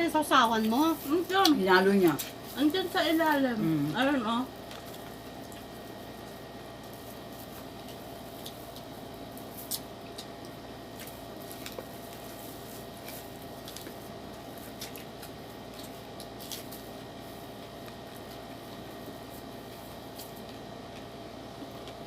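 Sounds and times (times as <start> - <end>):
steady background hum: 0.0 - 22.0
chewing: 4.6 - 6.0, 6.9 - 22.0.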